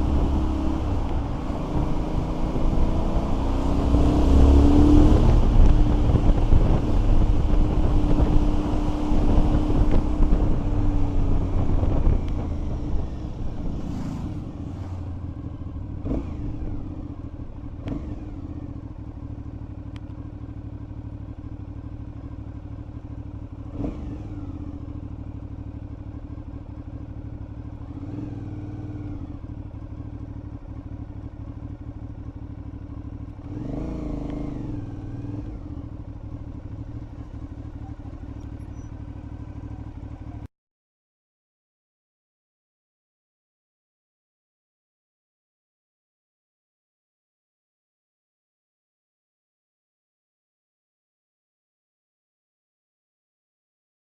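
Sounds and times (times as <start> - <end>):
motorcycle engine running: 0.0 - 40.5
wind buffeting on microphone: 4.5 - 14.6.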